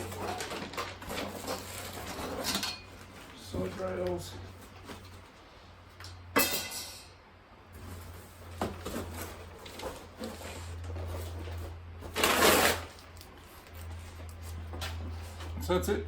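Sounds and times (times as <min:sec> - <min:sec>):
loud rustling scrape: 0:00.0 - 0:05.5, 0:07.8 - 0:15.6
metal clank ringing: 0:06.4 - 0:07.1.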